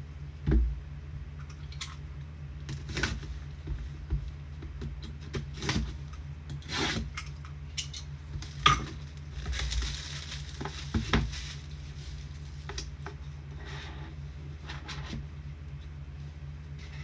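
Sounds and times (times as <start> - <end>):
low electrical hum: 0.0 - 17.0
packaging and cards rustling: 8.4 - 12.7.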